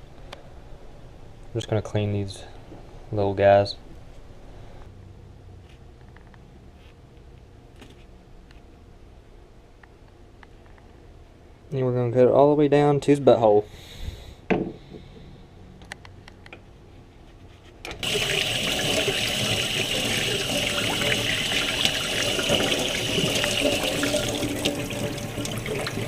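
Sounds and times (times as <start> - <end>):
tap water running: 18.0 - 26.0.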